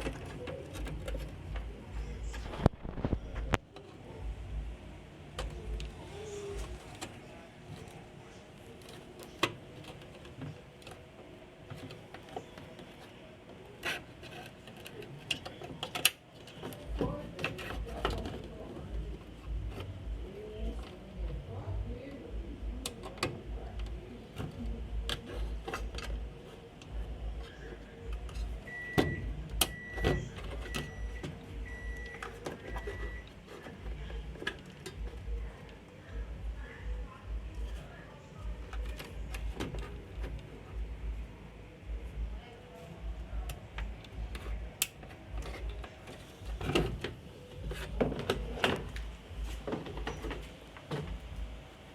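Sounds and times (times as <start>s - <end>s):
electronic beeps: 28.6s - 33.3s
parts being handled: 43.2s - 51.6s.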